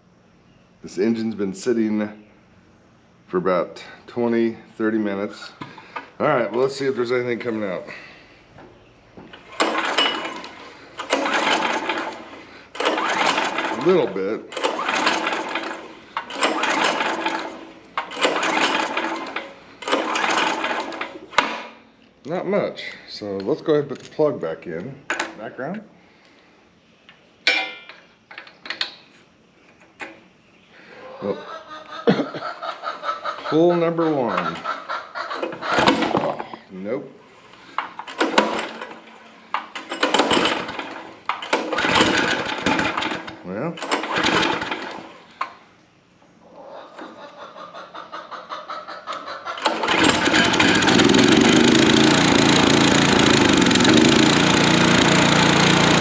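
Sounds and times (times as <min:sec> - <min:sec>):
engine pull-starter whirr: 0:09.3 - 0:21.7, 0:35.4 - 0:36.4, 0:37.6 - 0:45.6, 0:49.1 - 0:56.0.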